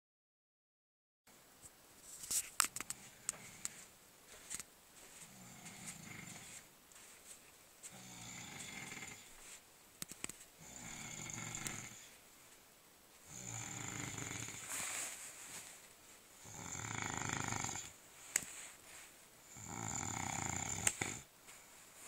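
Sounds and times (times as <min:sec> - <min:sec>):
person snoring: 0:05.2 - 0:06.6, 0:07.9 - 0:09.4, 0:10.6 - 0:12.2, 0:13.3 - 0:15.0, 0:16.4 - 0:18.0, 0:19.4 - 0:21.3.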